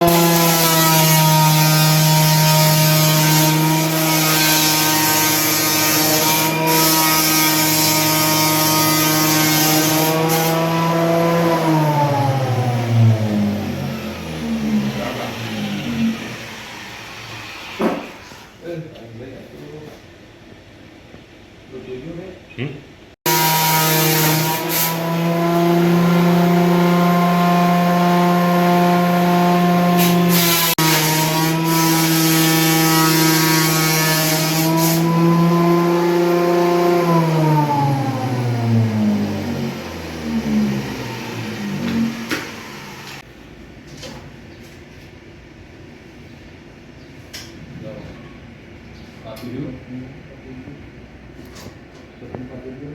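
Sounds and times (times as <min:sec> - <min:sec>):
thickness planer motor whine: 0:00.0 - 0:18.2, 0:23.3 - 0:43.2.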